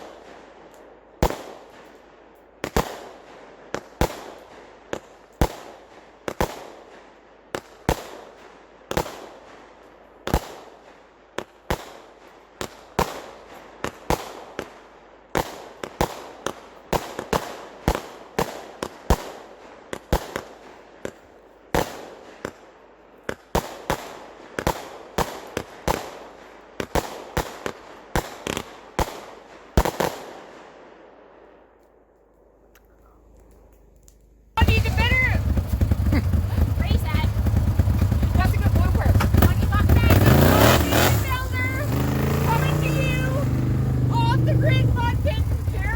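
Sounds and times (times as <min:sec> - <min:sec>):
fireworks bangs: 0:02.6 - 0:07.0, 0:23.3 - 0:30.6, 0:34.6 - 0:45.9.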